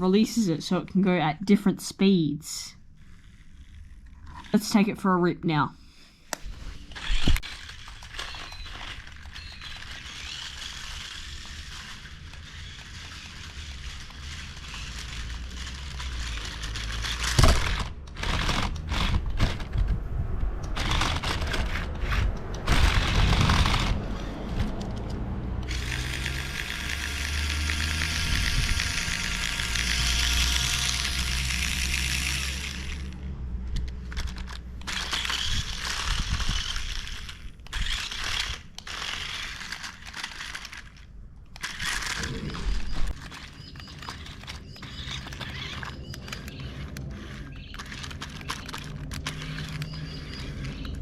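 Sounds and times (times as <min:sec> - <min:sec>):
electric motor and gearbox whirring: 0:00.0 - 0:05.6, 0:06.3 - 0:51.0
tyres crunching over rough ground: 0:27.4 - 0:51.0.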